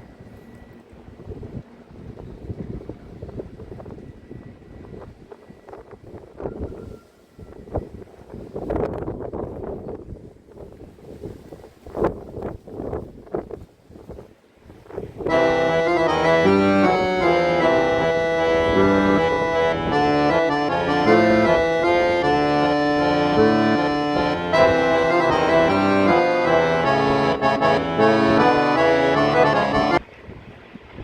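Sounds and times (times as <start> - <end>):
wind noise on microphone: 0.0 - 31.0
background music: 15.3 - 30.0.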